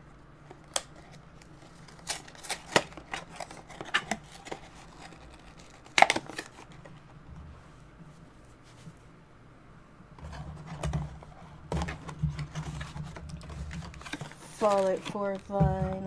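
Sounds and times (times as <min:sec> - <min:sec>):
packaging clicks and rustles: 0:00.4 - 0:07.1, 0:10.2 - 0:16.0.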